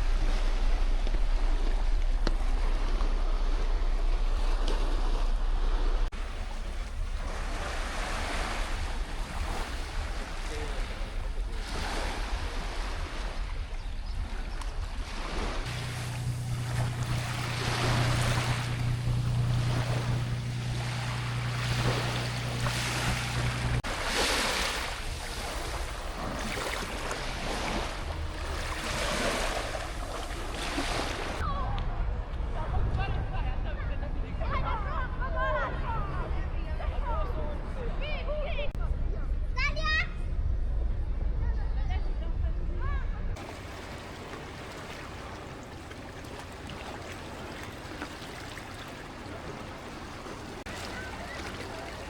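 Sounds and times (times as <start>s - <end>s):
rush of moving water: 0.0s - 31.7s, 43.4s - 52.0s
sea waves washing ashore: 0.0s - 33.2s, 43.4s - 52.0s.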